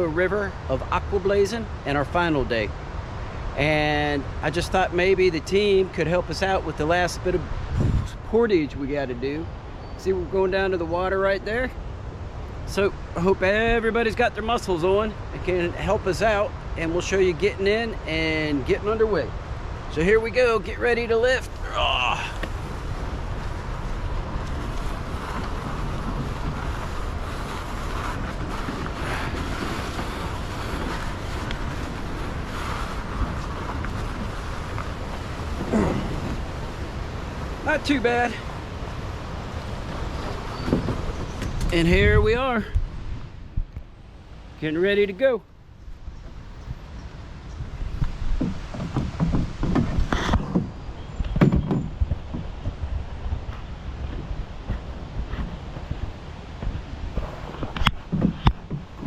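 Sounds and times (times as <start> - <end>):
wind buffeting microphone: 0.0 - 59.0
knocks and scrapes on canoe hull: 22.4 - 42.4, 47.6 - 59.0.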